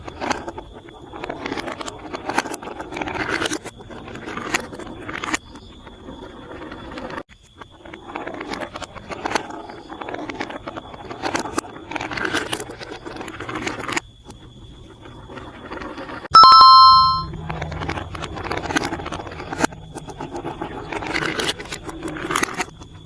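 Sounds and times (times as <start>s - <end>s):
bell ringing: 16.4s - 17.3s.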